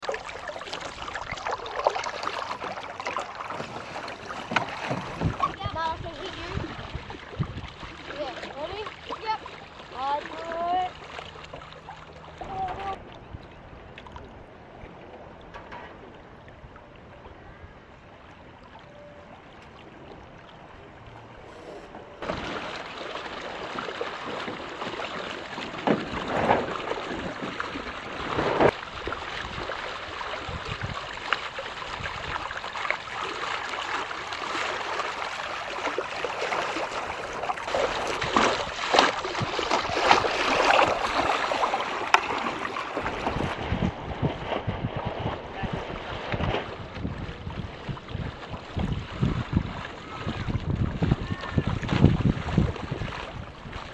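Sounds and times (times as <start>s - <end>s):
water splashing along boat hull: 0.0s - 53.9s
wind on microphone: 4.7s - 8.7s, 25.9s - 32.6s, 37.8s - 41.7s, 42.9s - 53.9s.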